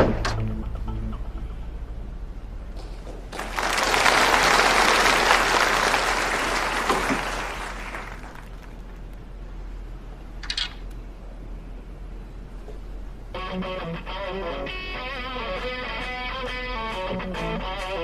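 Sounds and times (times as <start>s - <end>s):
audience applauding: 3.3s - 9.2s.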